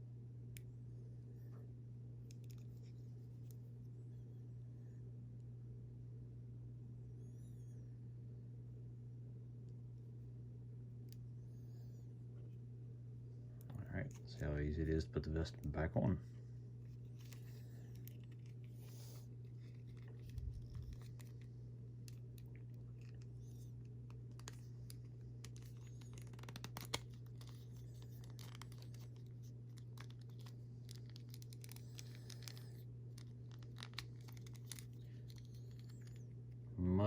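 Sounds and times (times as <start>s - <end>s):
steady low hum: 0.0s - 37.0s
plastic figure being handled: 16.8s - 36.6s.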